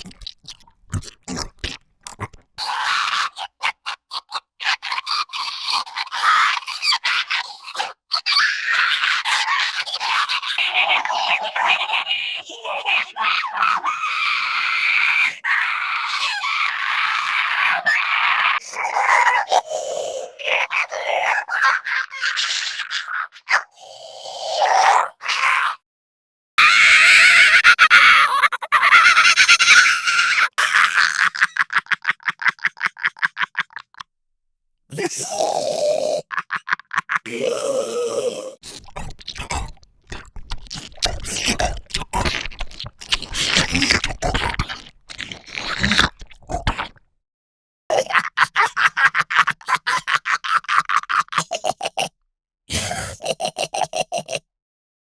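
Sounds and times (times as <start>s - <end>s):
creature chattering: 0.0s - 25.8s, 34.9s - 47.0s, 47.9s - 52.1s, 52.7s - 54.4s
creature squeal: 2.6s - 25.8s, 26.6s - 31.8s, 34.9s - 39.7s, 40.8s - 46.9s
creature grunt: 18.6s - 21.9s, 23.5s - 25.8s, 34.9s - 47.0s, 47.9s - 48.7s, 51.2s - 52.1s, 52.7s - 54.4s.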